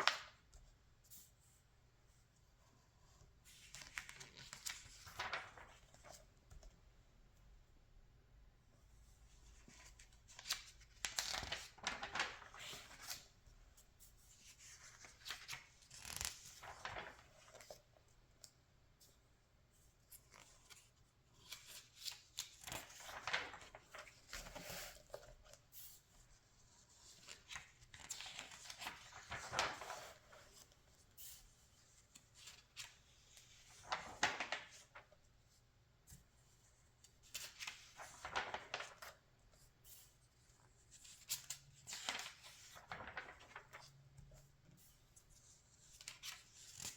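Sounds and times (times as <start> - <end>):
magazine pages turning: 3.5 - 6.6, 9.6 - 13.4, 14.4 - 17.9, 20.1 - 25.6, 26.6 - 30.8, 32.0 - 35.2, 37.1 - 39.3, 41.0 - 44.1, 45.7 - 46.9.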